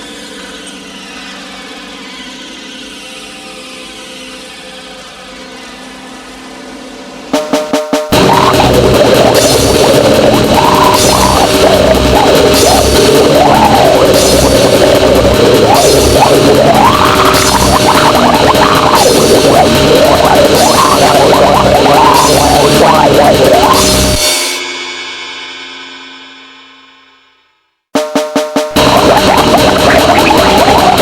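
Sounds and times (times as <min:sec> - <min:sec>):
distorted noise music with drums: 0:07.3 - 0:27.1, 0:28.0 - 0:31.0.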